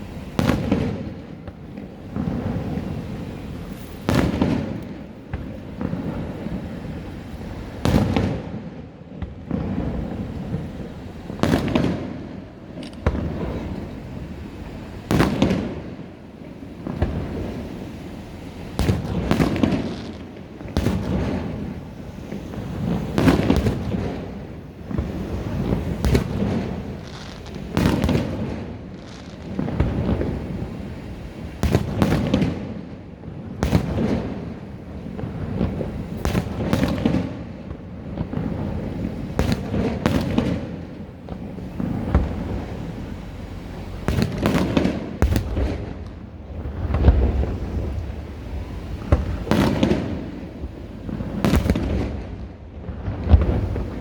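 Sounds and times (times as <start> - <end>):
firework shells bursting: 0.0 - 6.1, 9.9 - 16.0.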